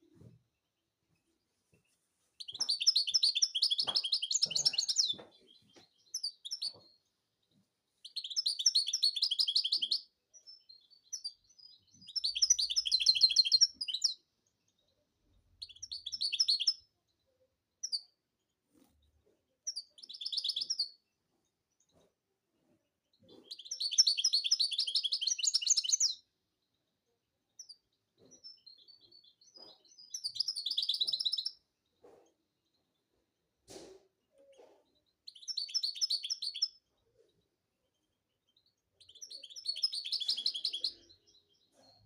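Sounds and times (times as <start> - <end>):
finch twittering: 2.4 - 6.8, 12.0 - 14.2, 29.5 - 31.5, 39.0 - 42.0.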